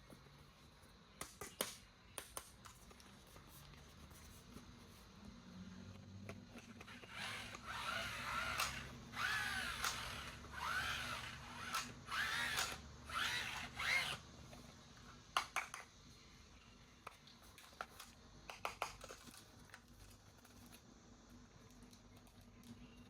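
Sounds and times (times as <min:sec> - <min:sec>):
small electric motor whirring: 0:06.6 - 0:14.2
sharp clicks: 0:08.4 - 0:10.2, 0:11.6 - 0:12.8.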